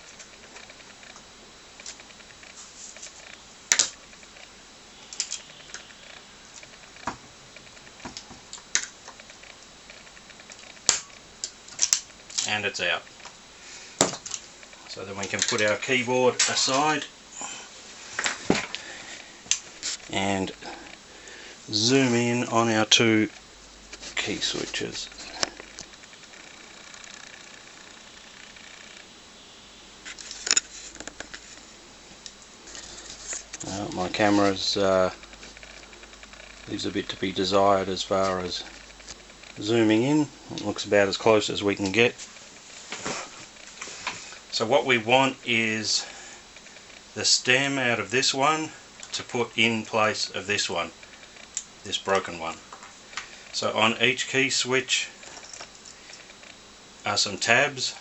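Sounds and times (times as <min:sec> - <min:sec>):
camera zoom motor whine: 0:03.2 - 0:07.0, 0:24.4 - 0:31.3.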